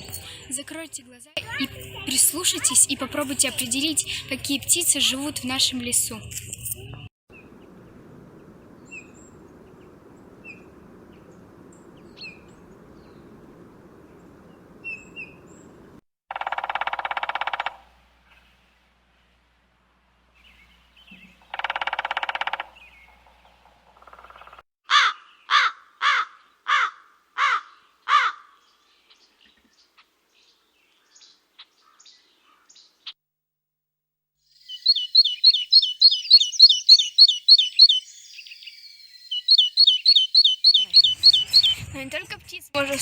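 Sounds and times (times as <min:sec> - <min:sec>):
fast high bird chirping: 0:34.5 - 0:41.9
harsh buzzy bird call: 0:34.6 - 0:41.8.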